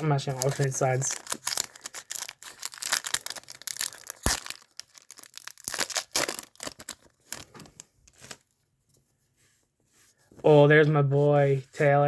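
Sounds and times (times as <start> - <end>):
cards and plastic packaging rustling: 0.0 - 8.7.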